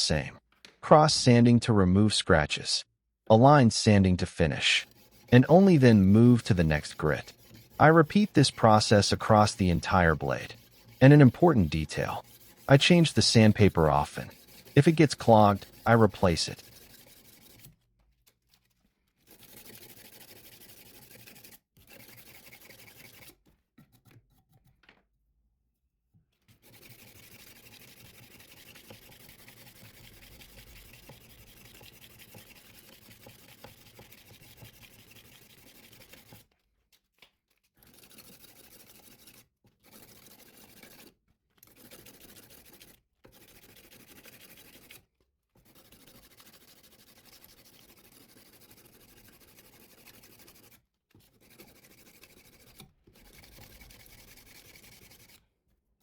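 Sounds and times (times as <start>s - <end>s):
sandpaper rasping on steel blade: 4.6s - 17.8s, 19.2s - 23.4s, 26.6s - 36.5s, 37.7s - 45.0s, 45.6s - 55.4s.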